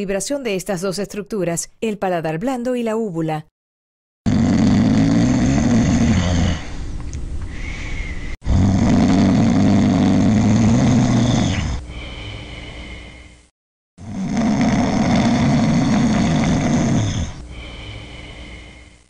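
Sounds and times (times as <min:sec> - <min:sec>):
person snoring: 0:04.3 - 0:19.0.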